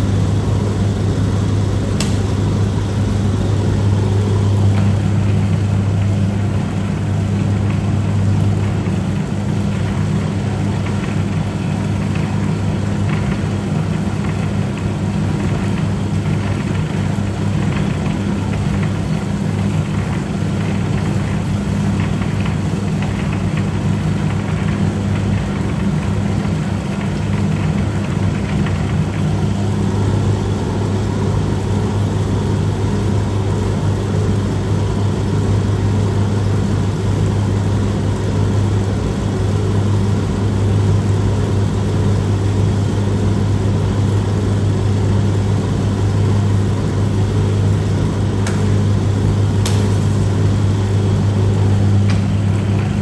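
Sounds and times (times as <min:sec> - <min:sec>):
noodle-cutting machine motor hum: 0:00.0 - 0:53.0.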